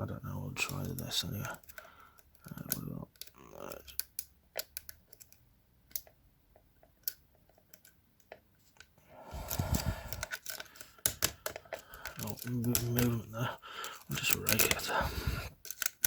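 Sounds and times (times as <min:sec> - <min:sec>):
lock pick clicking: 0:15.6 - 0:16.0.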